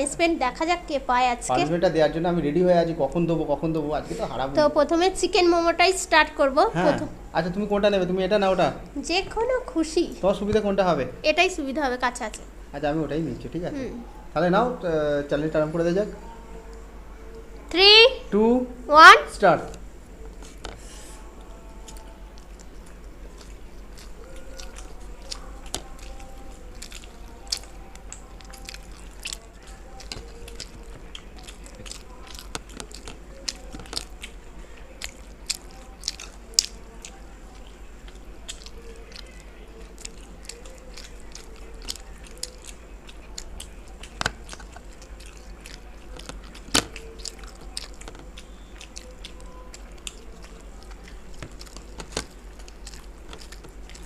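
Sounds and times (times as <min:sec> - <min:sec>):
people chewing with wet mouth sounds: 0:19.7 - 0:54.0.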